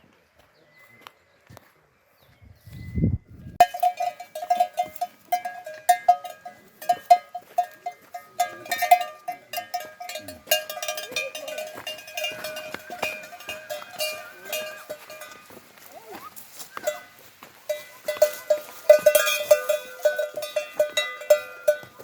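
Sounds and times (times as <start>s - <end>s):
metal bell clanking: 3.6s - 15.7s, 16.8s - 22.0s.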